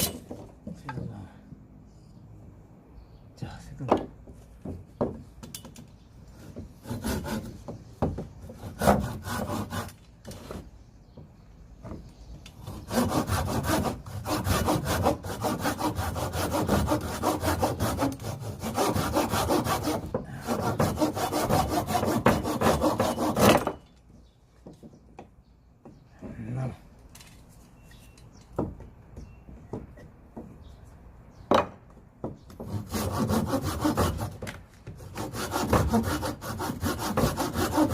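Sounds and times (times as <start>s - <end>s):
hand saw cutting log: 6.4s - 7.7s, 8.4s - 10.7s, 12.6s - 23.8s, 32.6s - 37.9s.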